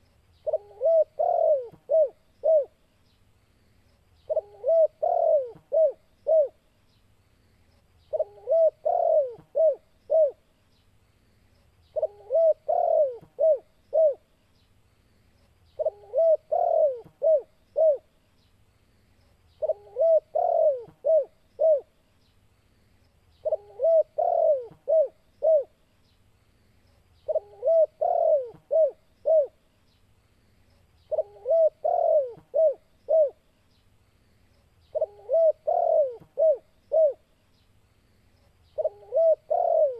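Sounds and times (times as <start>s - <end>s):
dove cooing: 0.4s - 2.8s, 4.3s - 6.6s, 8.1s - 10.4s, 11.9s - 14.3s, 15.8s - 18.1s, 19.6s - 21.9s, 23.4s - 25.8s, 27.2s - 29.6s, 31.1s - 33.4s, 34.9s - 37.3s, 38.8s - 39.9s.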